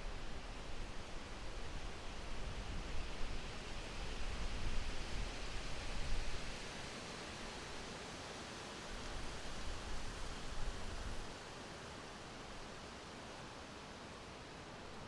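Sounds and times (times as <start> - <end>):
wind rustling in trees: 0.0 - 15.0.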